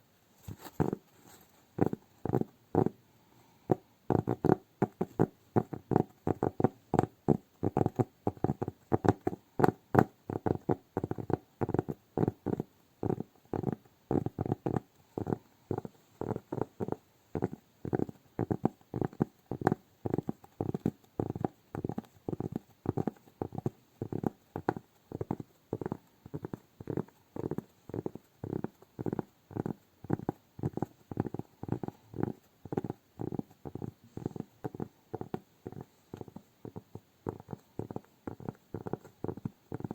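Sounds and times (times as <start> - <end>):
hands making soft dull strokes: 0.2 - 3.0, 13.1 - 39.9.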